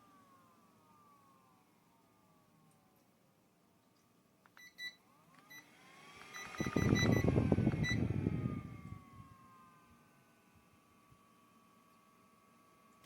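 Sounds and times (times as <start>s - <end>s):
fan motor whine: 0.0s - 3.0s, 5.0s - 13.0s
fan control beeping: 4.6s - 9.0s.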